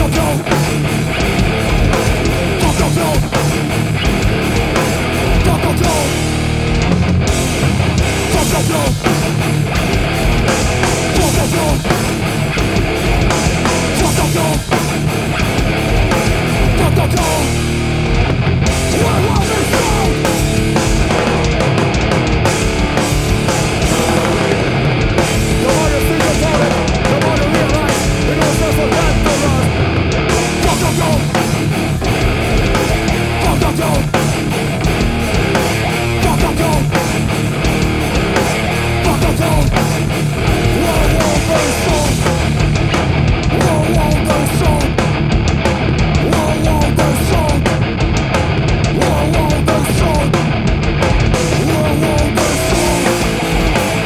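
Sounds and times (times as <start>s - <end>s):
heavy rock band playing: 0.0s - 54.0s.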